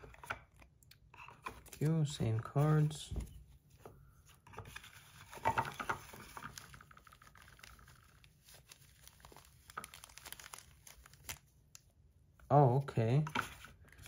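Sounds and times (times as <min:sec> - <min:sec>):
wrapping crinkling and rustling: 0:04.2 - 0:12.0.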